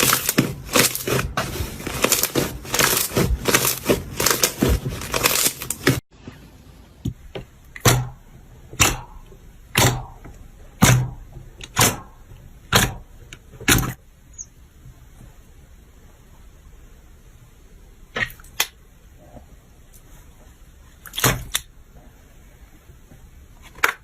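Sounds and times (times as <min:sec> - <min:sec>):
slime crackling: 0:00.0 - 0:06.0.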